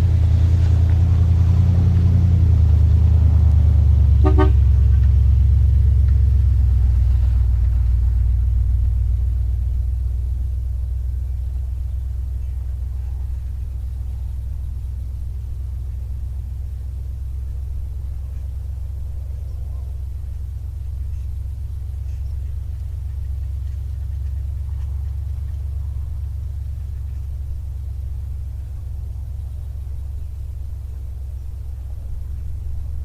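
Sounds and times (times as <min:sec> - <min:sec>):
car engine low rumble: 0:00.0 - 0:33.0.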